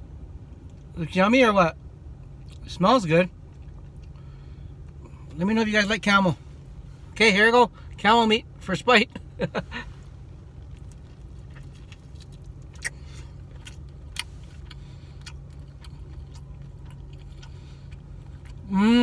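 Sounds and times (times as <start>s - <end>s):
steady low hum: 0.0s - 19.0s
man chewing: 3.4s - 5.4s, 9.4s - 19.0s.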